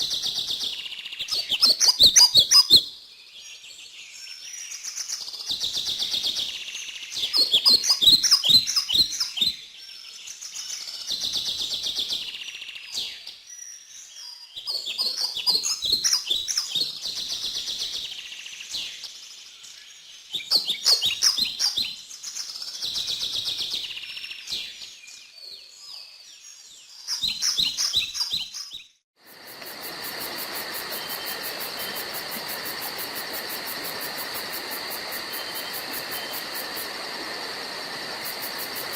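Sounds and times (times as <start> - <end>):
birds chirping and trilling: 0.0 - 29.0
steady hiss: 29.2 - 38.9.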